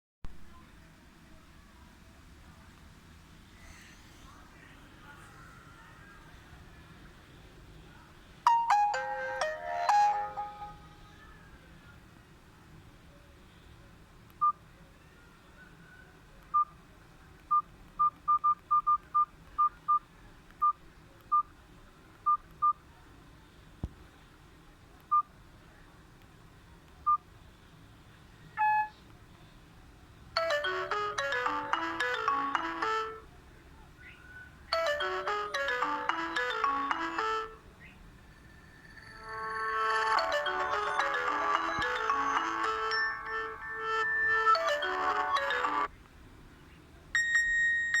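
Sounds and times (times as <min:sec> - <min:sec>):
ringtone melody: 0:08.5 - 0:11.0, 0:30.4 - 0:33.3, 0:34.7 - 0:37.7, 0:38.4 - 0:45.9, 0:47.2 - 0:48.0
phone key beeps: 0:17.5 - 0:20.0, 0:47.2 - 0:48.0.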